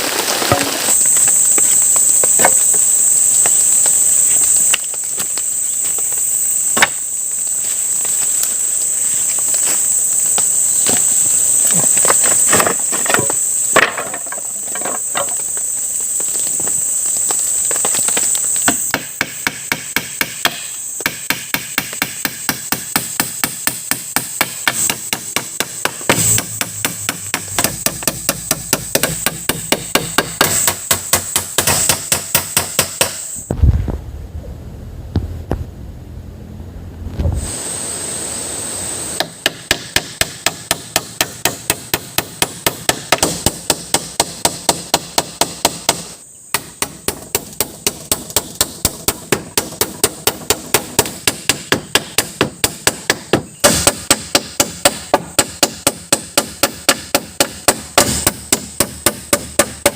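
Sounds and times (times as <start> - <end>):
steady high whine: 33.2 - 40.3
hammer blows on wood: 39.2 - 59.9.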